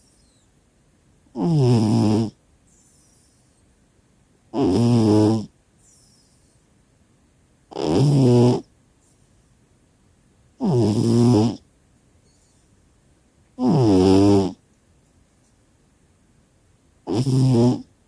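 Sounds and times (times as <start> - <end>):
cat snoring: 1.3 - 2.4, 4.5 - 5.5, 7.7 - 8.7, 10.6 - 11.6, 13.6 - 14.6, 17.0 - 17.9
faint breathing: 2.6 - 3.8, 5.8 - 6.8.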